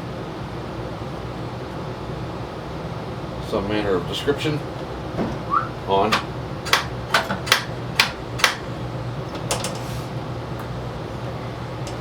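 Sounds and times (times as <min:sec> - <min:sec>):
steady low hum: 0:00.0 - 0:12.0
sharp clicks and taps of tools: 0:06.1 - 0:08.6.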